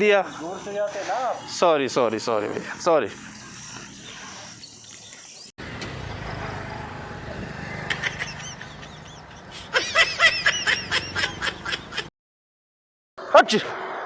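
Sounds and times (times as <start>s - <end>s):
high-pitched laughter: 7.6s - 12.1s.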